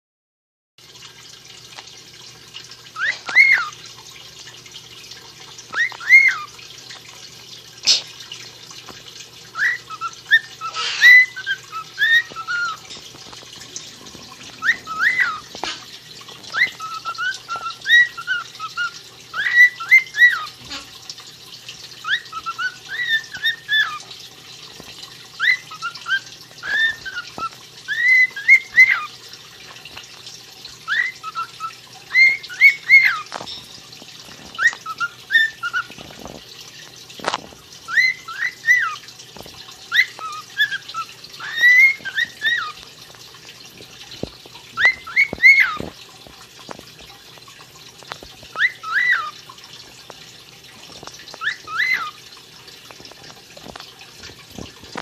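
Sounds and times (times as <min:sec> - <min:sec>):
bird whistled chirps: 0:09.6 - 0:12.8, 0:14.6 - 0:15.4, 0:25.4 - 0:29.1, 0:39.9 - 0:42.7.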